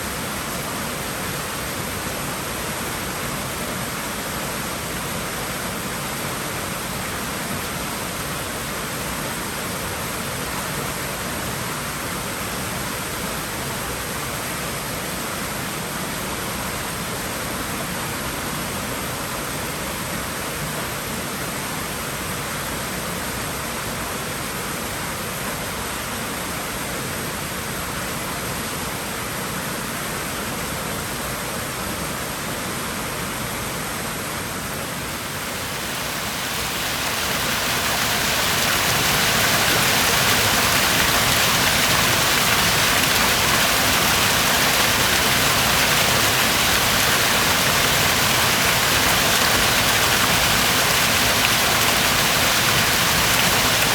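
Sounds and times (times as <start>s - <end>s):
water rushing in pool: 34.9s - 53.9s.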